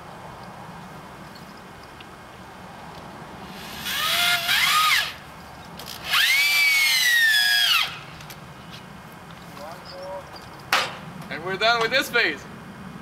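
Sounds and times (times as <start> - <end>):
power drill driving screws into wood: 3.5 - 5.2, 5.8 - 8.0.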